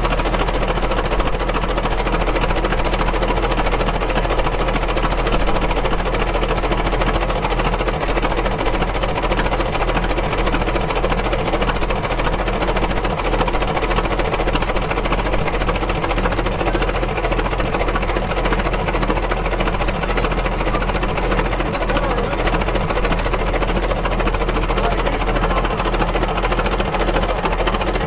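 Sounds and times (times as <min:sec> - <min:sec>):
old engine running: 0:00.0 - 0:28.0.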